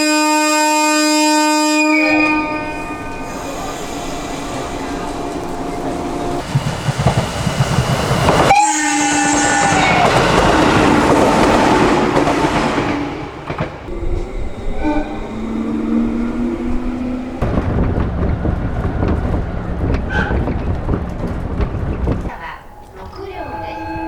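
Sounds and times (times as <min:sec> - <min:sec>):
train air horn: 0:00.0 - 0:05.0, 0:08.5 - 0:10.2, 0:13.9 - 0:17.4
train running on rails: 0:00.0 - 0:24.0.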